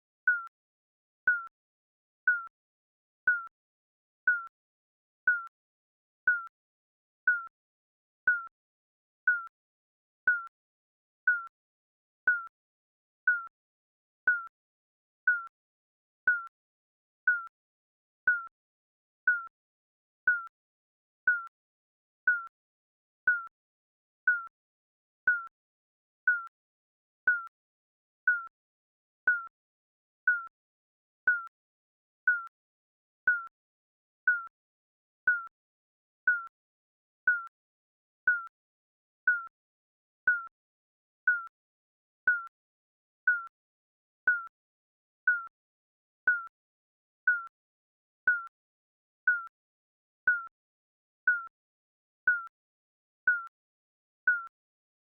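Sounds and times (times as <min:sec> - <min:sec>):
digital timer beeping: 0:00.3 - 0:00.5, 0:01.3 - 0:01.5, 0:02.3 - 0:02.5, 0:03.3 - 0:03.5, 0:04.3 - 0:04.5, 0:05.3 - 0:05.5, 0:06.3 - 0:06.5, 0:07.3 - 0:07.5, 0:08.3 - 0:08.5, 0:09.3 - 0:09.5, 0:10.3 - 0:10.5, 0:11.3 - 0:11.5, 0:12.3 - 0:12.5, 0:13.3 - 0:13.5, 0:14.3 - 0:14.5, 0:15.3 - 0:15.5, 0:16.3 - 0:16.5, 0:17.3 - 0:17.5, 0:18.3 - 0:18.5, 0:19.3 - 0:19.5, 0:20.3 - 0:20.5, 0:21.3 - 0:21.5, 0:22.3 - 0:22.5, 0:23.3 - 0:23.5, 0:24.3 - 0:24.5, 0:25.3 - 0:25.5, 0:26.3 - 0:26.5, 0:27.3 - 0:27.5, 0:28.3 - 0:28.5, 0:29.3 - 0:29.5, 0:30.3 - 0:30.5, 0:31.3 - 0:31.5, 0:32.3 - 0:32.5, 0:33.3 - 0:33.5, 0:34.3 - 0:34.5, 0:35.3 - 0:35.5, 0:36.3 - 0:36.5, 0:37.3 - 0:37.5, 0:38.3 - 0:38.5, 0:39.3 - 0:39.5, 0:40.3 - 0:40.5, 0:41.3 - 0:41.5, 0:42.3 - 0:42.5, 0:43.3 - 0:43.5, 0:44.3 - 0:44.5, 0:45.3 - 0:45.5, 0:46.3 - 0:46.5, 0:47.3 - 0:47.5, 0:48.3 - 0:48.5, 0:49.3 - 0:49.5, 0:50.3 - 0:50.5, 0:51.3 - 0:51.5, 0:52.3 - 0:52.5, 0:53.3 - 0:53.5, 0:54.3 - 0:54.5.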